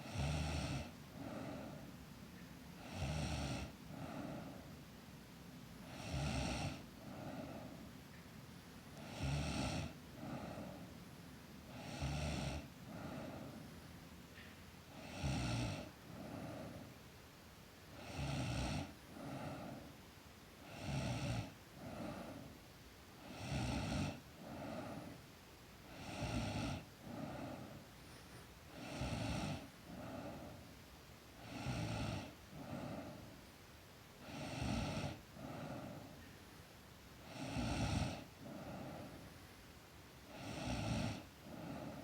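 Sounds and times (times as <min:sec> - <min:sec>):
girl snoring: 0:00.0 - 0:01.8, 0:02.8 - 0:04.6, 0:05.8 - 0:07.7, 0:09.0 - 0:10.8, 0:11.7 - 0:13.6, 0:14.9 - 0:16.9, 0:17.9 - 0:19.9, 0:20.6 - 0:22.5, 0:23.2 - 0:25.2, 0:25.9 - 0:27.8, 0:28.7 - 0:30.6, 0:31.4 - 0:33.4, 0:34.2 - 0:36.2, 0:37.2 - 0:39.3, 0:40.2 - 0:42.0
soft breath: 0:00.0 - 0:42.0.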